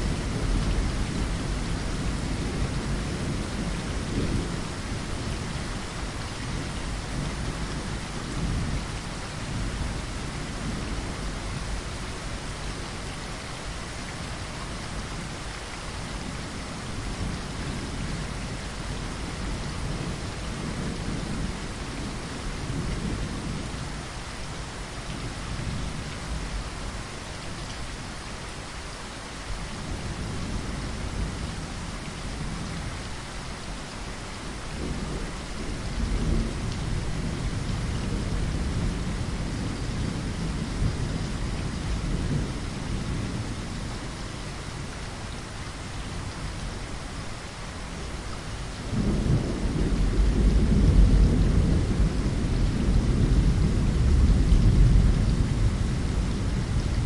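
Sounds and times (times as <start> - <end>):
rain hitting a window: 0.0 - 57.0
thunder rumbling: 48.8 - 57.0.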